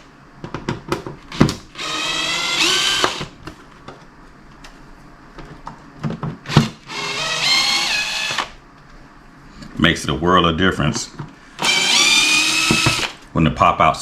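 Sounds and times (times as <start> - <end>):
power drill whining: 1.3 - 3.3, 6.5 - 8.6, 11.6 - 13.2.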